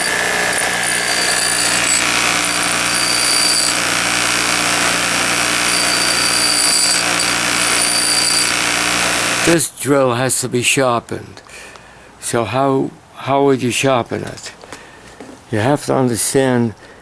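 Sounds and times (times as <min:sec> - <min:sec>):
bench grinder running: 0:00.0 - 0:09.5
thin high whine: 0:00.0 - 0:09.5.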